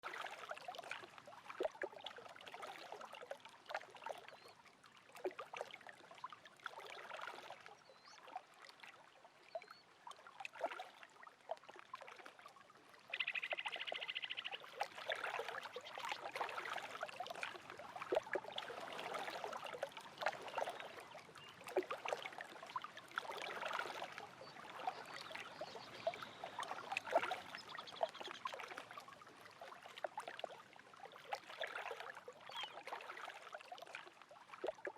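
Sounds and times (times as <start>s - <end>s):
waves lapping at shore: 0.0s - 9.0s, 10.0s - 34.9s
faint bird chirps: 13.1s - 14.8s, 24.4s - 28.6s, 32.5s - 32.8s.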